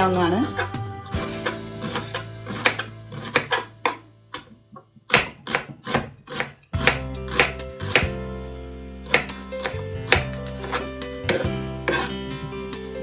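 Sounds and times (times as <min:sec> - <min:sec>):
knife chopping on cutting board: 0:00.2 - 0:08.2, 0:09.0 - 0:12.2.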